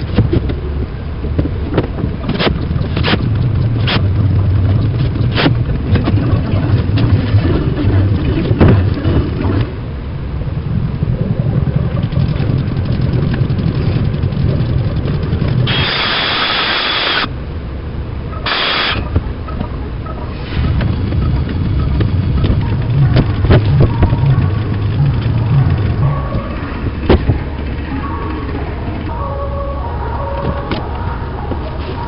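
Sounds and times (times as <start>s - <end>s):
machine humming: 0.0s - 32.0s
sharp clicks: 1.8s - 7.4s, 12.0s - 17.3s
hissing bursts: 15.6s - 17.3s, 18.5s - 19.1s.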